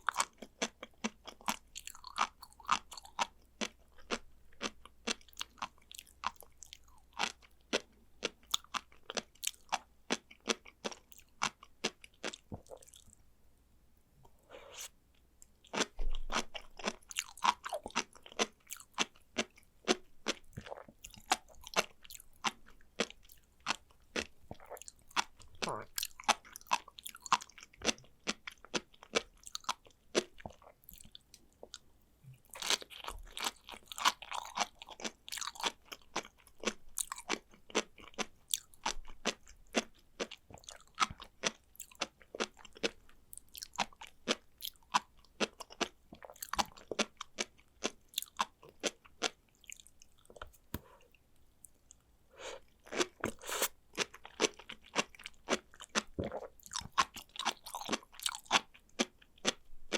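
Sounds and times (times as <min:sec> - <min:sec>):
seaweed beads crunching while chewed: 0:32.6 - 0:50.6, 0:52.4 - 0:59.6.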